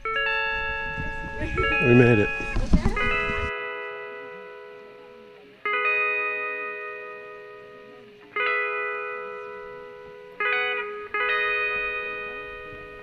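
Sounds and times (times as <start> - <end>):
electric guitar strummed chords: 0.0 - 13.0.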